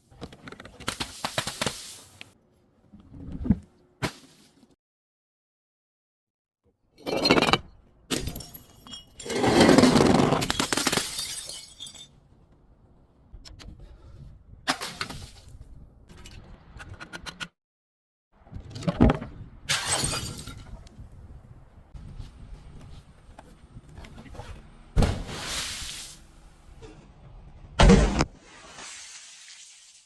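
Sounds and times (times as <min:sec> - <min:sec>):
glass bottles smashing: 0:08.1 - 0:12.2, 0:19.7 - 0:20.7
low thud: 0:25.0 - 0:25.4.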